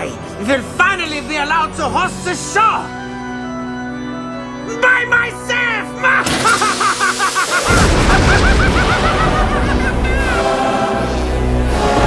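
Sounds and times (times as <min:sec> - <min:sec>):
music: 0:00.0 - 0:12.0
cartoon character laughing syllables: 0:06.4 - 0:10.4.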